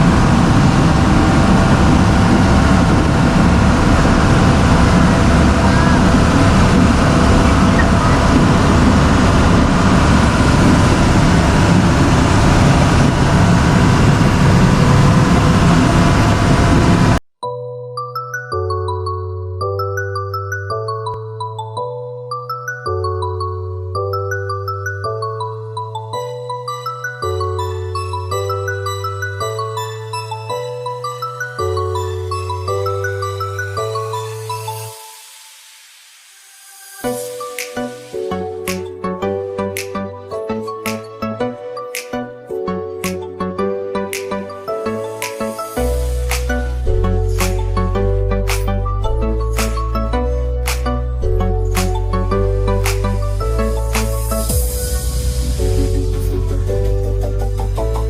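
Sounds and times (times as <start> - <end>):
background music with bass: 0.0 - 17.2, 37.0 - 58.0
boat engine droning: 0.0 - 17.2.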